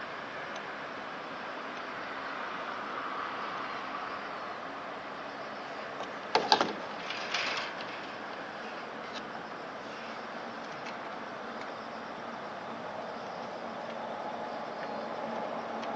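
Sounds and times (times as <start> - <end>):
steady background hiss: 0.0 - 15.9
short scraping rattle: 6.3 - 8.2.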